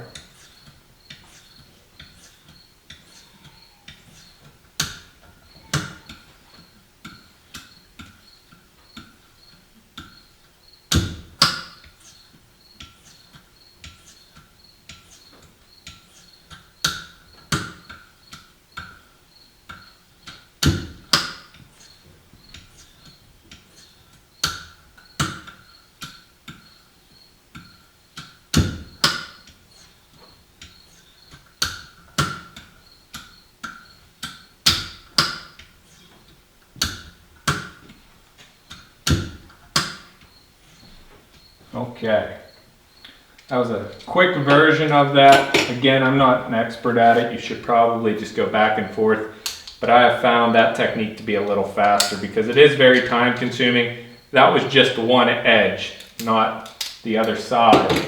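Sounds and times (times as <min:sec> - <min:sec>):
sharp knocks with ringing: 0:10.9 - 0:12.0, 0:27.6 - 0:29.6, 0:45.2 - 0:45.9, 0:57.7 - 0:58.0
honing stone clicking: 0:56.0 - 0:58.0.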